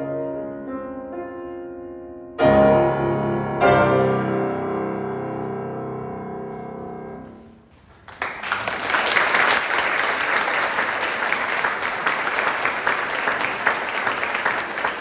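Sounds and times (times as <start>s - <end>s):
piano chord: 0.0s - 7.6s
audience applause: 7.9s - 15.0s.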